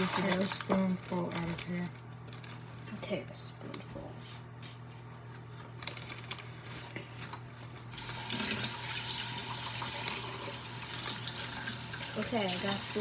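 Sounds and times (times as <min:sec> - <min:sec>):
running water hissing: 0:08.0 - 0:13.0.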